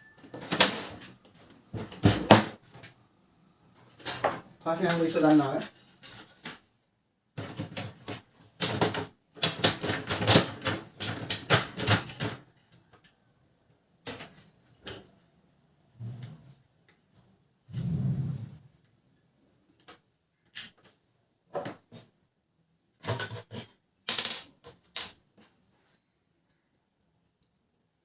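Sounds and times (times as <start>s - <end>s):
printer parts clicking and rattling: 7.4s - 13.0s.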